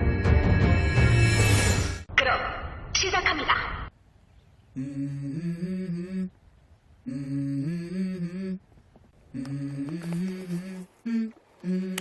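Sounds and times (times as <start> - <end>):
wordless hummed vocal melody: 4.7 - 6.4, 7.0 - 12.0.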